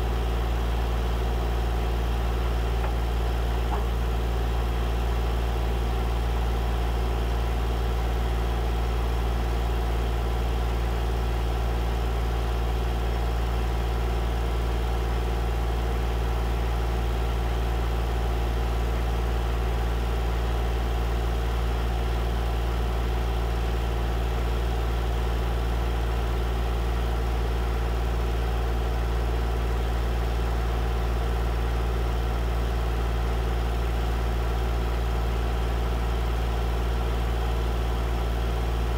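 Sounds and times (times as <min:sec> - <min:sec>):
vehicle engine droning: 0:02.1 - 0:05.4.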